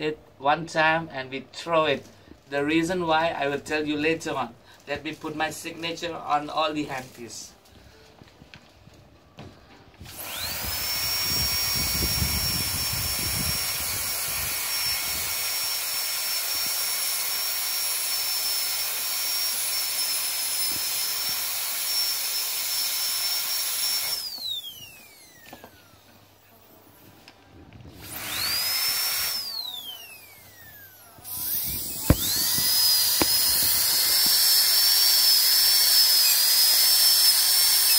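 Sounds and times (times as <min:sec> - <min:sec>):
dental drill whine: 0:10.0 - 0:26.5, 0:27.9 - 0:37.9.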